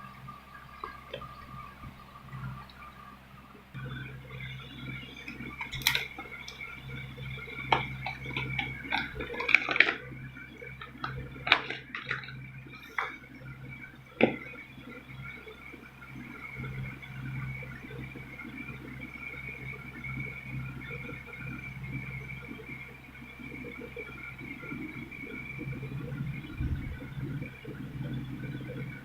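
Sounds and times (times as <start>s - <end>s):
low background hum: 0.0s - 29.0s.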